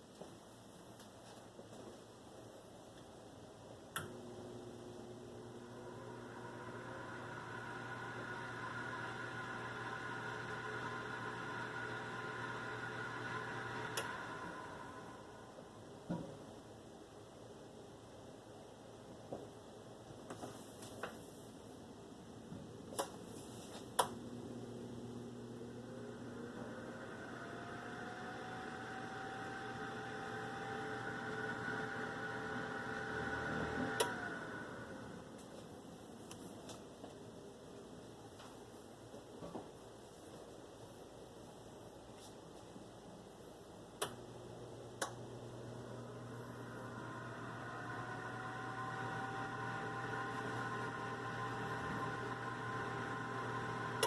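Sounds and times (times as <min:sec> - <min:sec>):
oven fan humming: 0:03.9 - 0:16.1, 0:24.0 - 0:36.8, 0:44.0 - 0:54.0.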